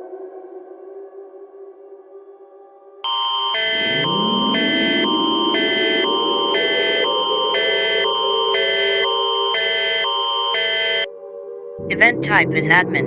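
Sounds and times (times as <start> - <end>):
alert signal alternating tones: 3.1 - 11.1
steady high tone: 3.1 - 11.1.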